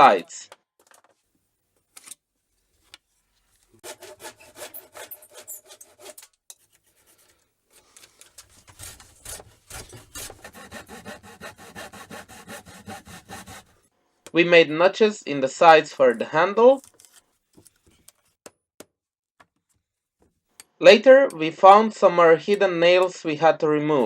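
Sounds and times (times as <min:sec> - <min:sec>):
hand saw cutting wood: 0:03.7 - 0:13.9.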